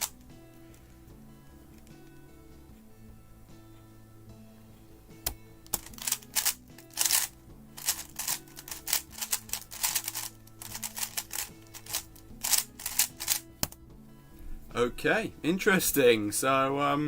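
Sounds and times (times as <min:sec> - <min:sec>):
puzzle cube plastic clicking: 0:05.7 - 0:13.8.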